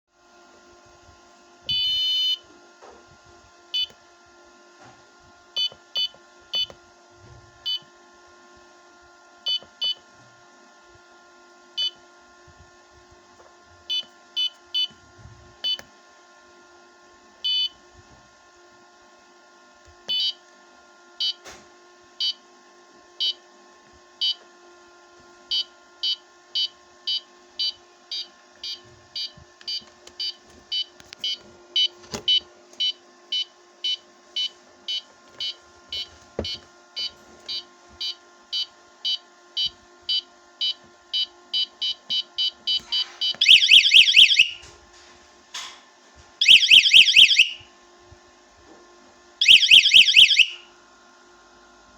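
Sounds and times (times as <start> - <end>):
warbling electronic alarm: 43.0 - 44.6, 46.4 - 47.6, 49.4 - 50.6.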